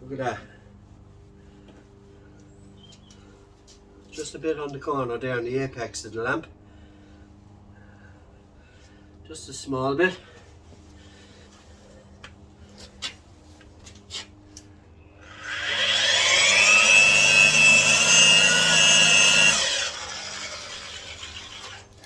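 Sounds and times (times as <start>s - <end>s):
power tool whining: 15.2s - 22.0s.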